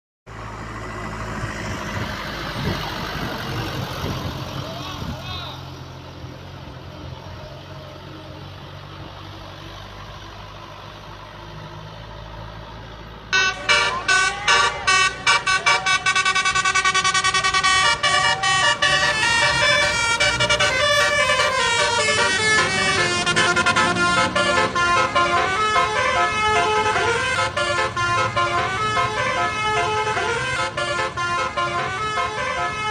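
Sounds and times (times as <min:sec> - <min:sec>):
low engine rumble: 0:00.3 - 0:32.9
musical air horn tune: 0:13.3 - 0:32.9.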